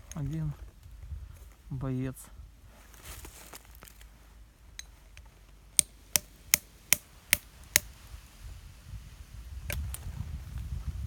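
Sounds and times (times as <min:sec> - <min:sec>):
sharp taps on cartridges: 0:05.8 - 0:07.9.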